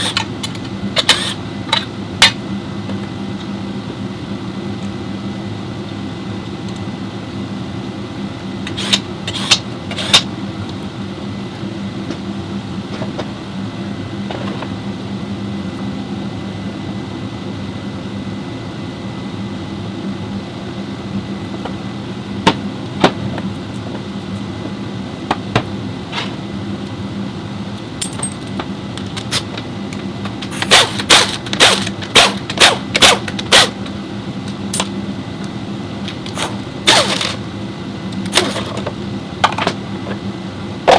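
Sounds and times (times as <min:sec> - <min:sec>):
steady mechanical hum: 0:00.0 - 0:40.9
metallic clinks and clanks: 0:28.0 - 0:28.6.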